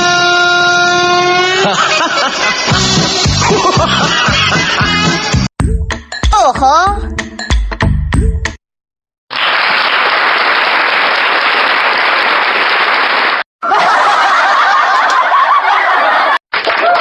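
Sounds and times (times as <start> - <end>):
crowd laughing and whooping: 1.5 - 5.2, 13.6 - 17.0
canned applause: 9.3 - 13.5, 16.6 - 17.0.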